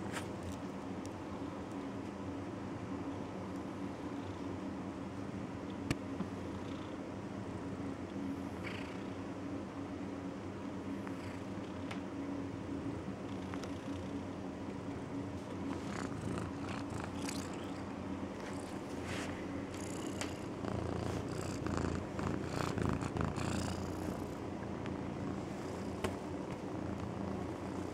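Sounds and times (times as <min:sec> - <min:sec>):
cat snoring: 0:15.8 - 0:17.8, 0:19.7 - 0:24.4.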